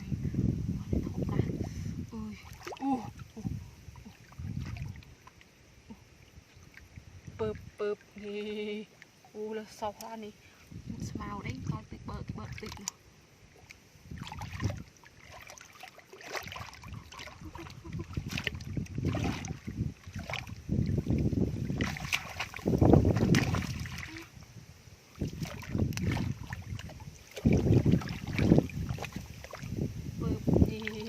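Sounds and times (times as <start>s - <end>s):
hands splashing in muddy water: 13.6s - 24.4s, 25.1s - 29.9s.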